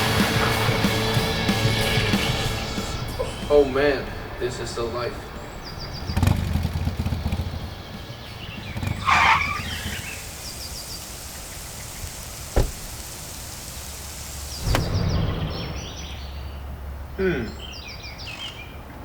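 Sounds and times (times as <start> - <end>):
steady hiss: 9.2 - 15.5
sharp knock: 12.6 - 13.1.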